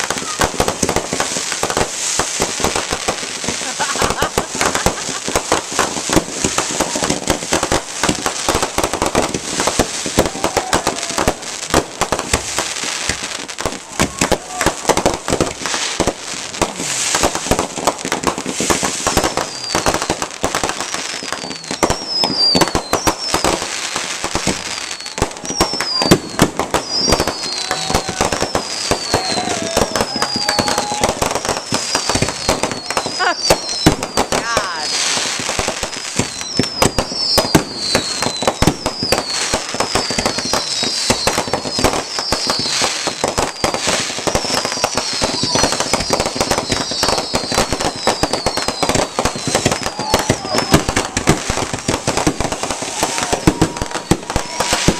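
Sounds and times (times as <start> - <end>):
fireworks crackling and banging: 0.0 - 54.9
high whistles falling in pitch: 19.1 - 20.2, 20.9 - 23.7, 24.4 - 54.9.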